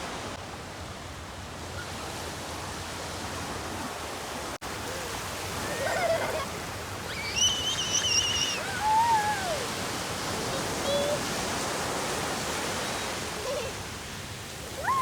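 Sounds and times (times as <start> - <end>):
sea waves washing on sand: 0.0 - 15.0
shrill high held cry: 7.1 - 9.8, 14.7 - 15.0.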